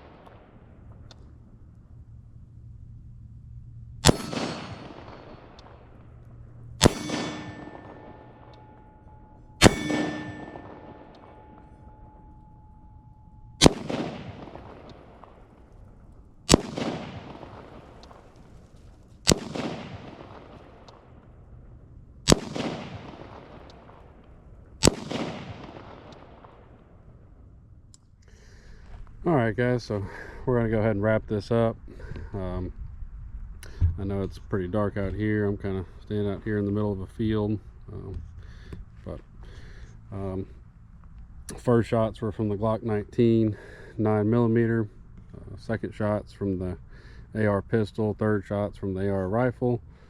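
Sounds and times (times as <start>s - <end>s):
gunshots with echo: 4.0s - 6.2s, 6.8s - 15.9s, 16.5s - 18.4s, 19.2s - 21.2s, 22.3s - 24.2s, 24.8s - 27.0s
metallic ringing: 4.0s - 15.4s.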